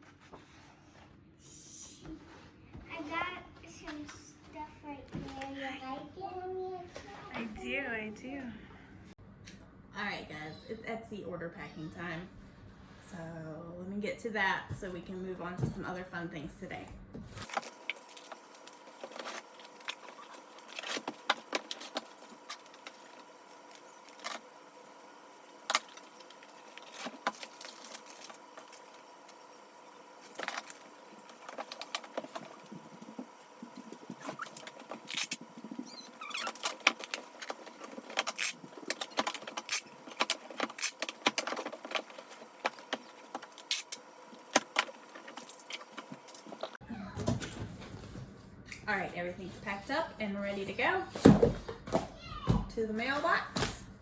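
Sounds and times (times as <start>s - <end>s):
packaging clicks and rustles: 17.4s - 46.8s.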